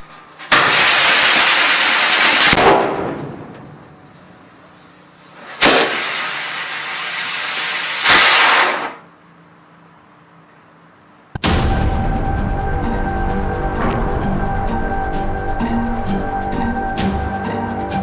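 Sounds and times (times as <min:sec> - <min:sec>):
sharp crack: 0:00.4 - 0:03.9, 0:05.4 - 0:06.7, 0:07.8 - 0:09.1, 0:11.4 - 0:16.4.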